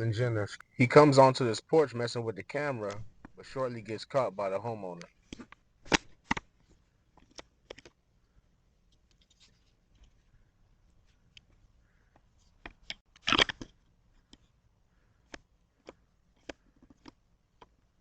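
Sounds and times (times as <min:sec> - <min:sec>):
microphone handling clicks and scratching: 0:04.9 - 0:08.0, 0:11.1 - 0:14.5, 0:15.2 - 0:18.0.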